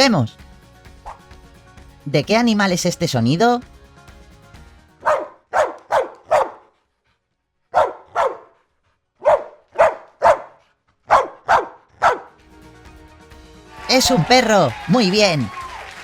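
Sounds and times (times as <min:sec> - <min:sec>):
dog barking loudly: 0:05.0 - 0:06.7, 0:07.7 - 0:08.6, 0:09.2 - 0:12.4.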